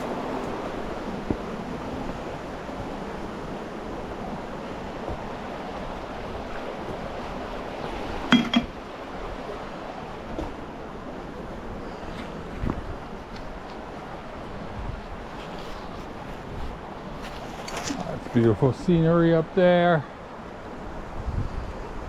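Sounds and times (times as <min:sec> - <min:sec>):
creek water rushing: 0:00.0 - 0:22.0.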